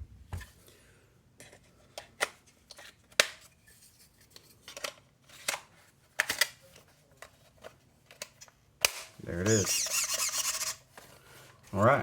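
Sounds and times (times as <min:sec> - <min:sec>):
plastic parts clicking and snapping: 0:04.6 - 0:06.6.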